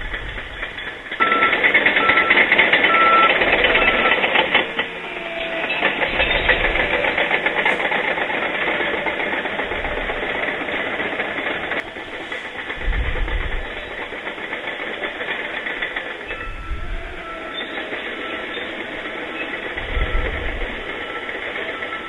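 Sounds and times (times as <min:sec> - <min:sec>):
diesel engine running: 0:00.0 - 0:22.0
steel tracks clanking: 0:00.0 - 0:22.0
reverse alarm beeping: 0:01.2 - 0:07.4, 0:15.6 - 0:22.0.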